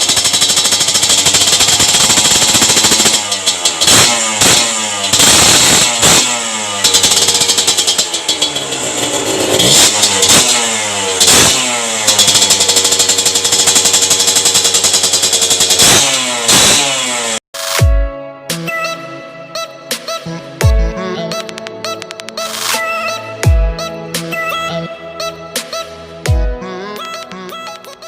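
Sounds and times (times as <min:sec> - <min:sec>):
two-stroke motorcycle engine revving: 0:00.0 - 0:17.5.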